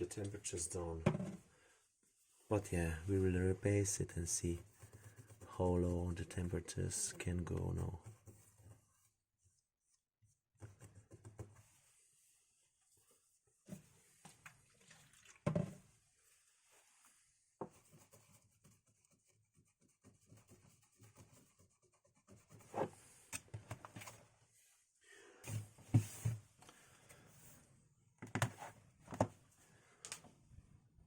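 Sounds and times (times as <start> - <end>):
rubbing and small knocks: 4.2 - 12.0.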